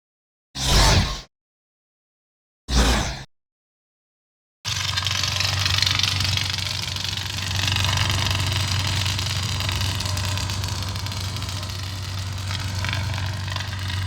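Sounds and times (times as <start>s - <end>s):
lightsaber humming and crackling: 4.7s - 14.0s.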